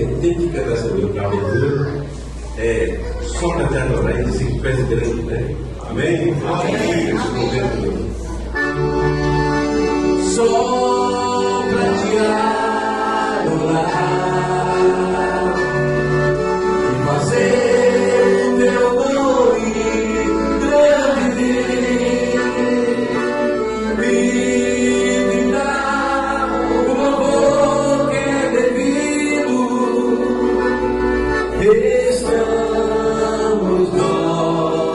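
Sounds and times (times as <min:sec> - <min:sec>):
instrumental accompaniment: 0:05.6 - 0:34.9
group singing worship song: 0:06.4 - 0:07.9, 0:10.2 - 0:34.9.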